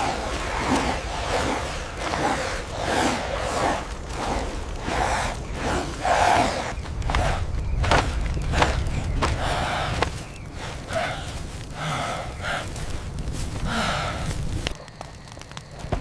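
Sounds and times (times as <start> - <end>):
person gasping and panting: 9.4 - 14.5.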